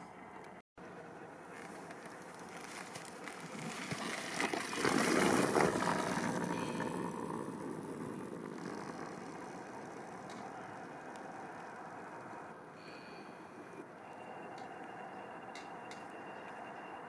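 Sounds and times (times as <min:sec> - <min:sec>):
dirt bike passing by: 0:01.5 - 0:12.6.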